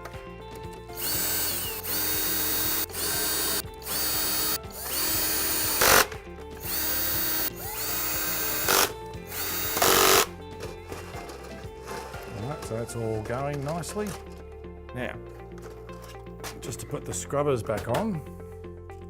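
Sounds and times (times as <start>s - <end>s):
drill-driver motor whine: 1.0s - 10.3s.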